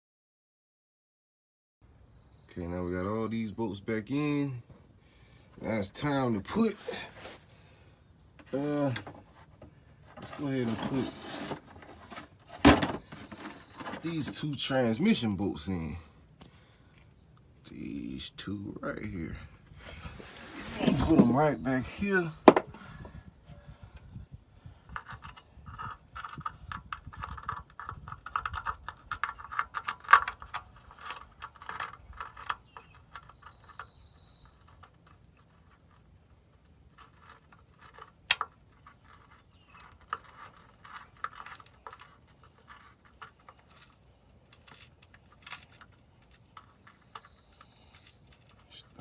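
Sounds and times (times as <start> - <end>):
metal tool clatter: 10.2 - 14.4.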